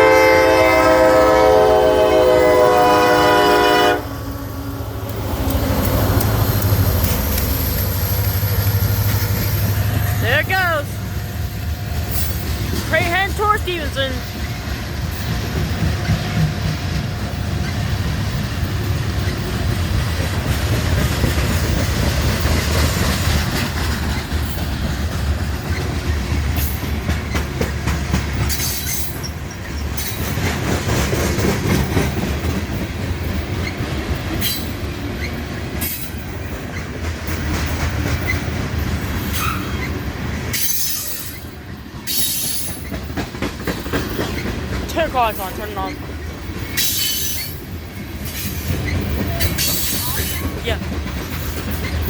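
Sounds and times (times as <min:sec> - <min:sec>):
freight train cars rumbling: 0:00.0 - 0:52.0
wheels clicking over rail joints: 0:05.0 - 0:10.9, 0:11.6 - 0:52.0
high wheel squeals: 0:06.4 - 0:10.3, 0:38.2 - 0:43.1, 0:46.6 - 0:50.6.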